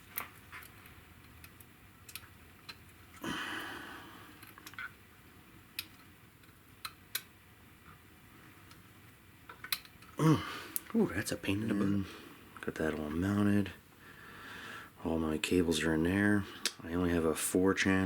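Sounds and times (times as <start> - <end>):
clicks and taps of small parts: 0.0 - 3.0, 4.4 - 4.9, 5.7 - 7.3, 9.5 - 10.1.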